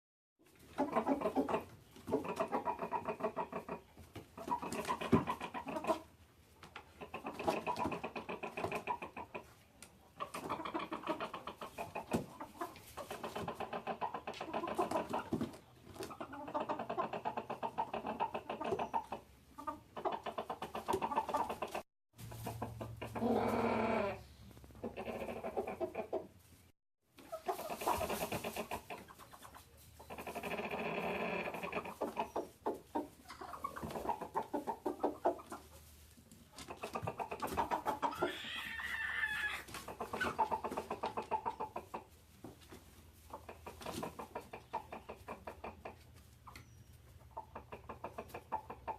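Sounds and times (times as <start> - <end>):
chickens clucking loudly: 0.5 - 48.9.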